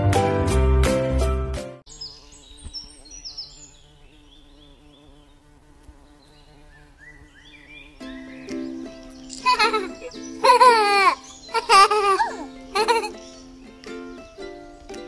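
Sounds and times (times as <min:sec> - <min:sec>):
music: 0:00.0 - 0:01.8, 0:08.0 - 0:15.0
birds chirping and whistling: 0:01.9 - 0:05.3, 0:06.1 - 0:15.0.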